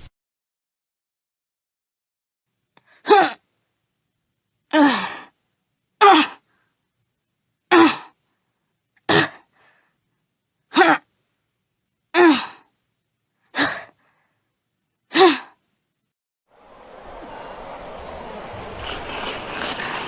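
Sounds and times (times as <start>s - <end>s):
pained vocal grunt: 3.1s - 3.4s, 6.0s - 6.4s, 7.7s - 8.1s, 12.2s - 12.6s.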